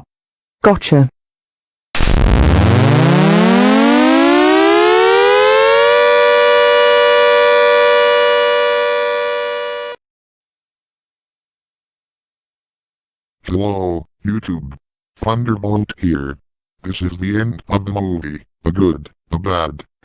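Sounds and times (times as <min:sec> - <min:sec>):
tornado siren: 0:02.1 - 0:10.0.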